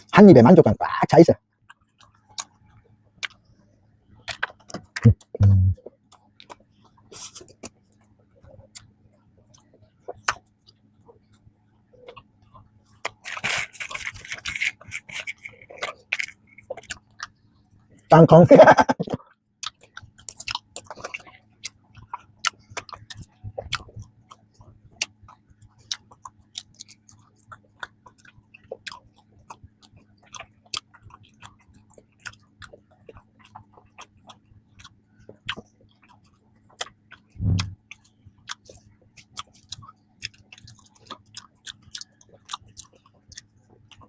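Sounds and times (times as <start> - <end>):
close chewing with mouth smacks: 1.6 - 3.4, 4.2 - 18.1, 19.0 - 44.0
low voice hum: 5.0 - 5.9, 37.4 - 37.8.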